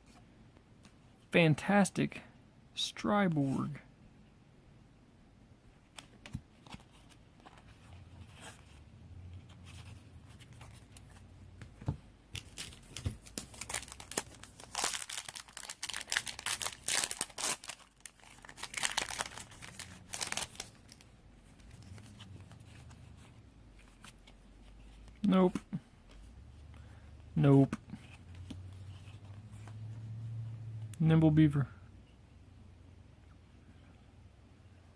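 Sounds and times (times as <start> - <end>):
foil wrapper tearing and crinkling: 12.4 - 21.0.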